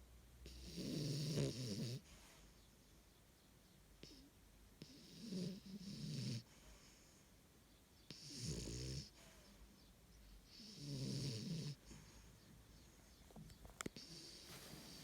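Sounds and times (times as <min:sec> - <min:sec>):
dog snoring: 0:00.4 - 0:02.1, 0:04.8 - 0:07.0, 0:08.1 - 0:09.2, 0:10.5 - 0:12.2, 0:14.0 - 0:15.0.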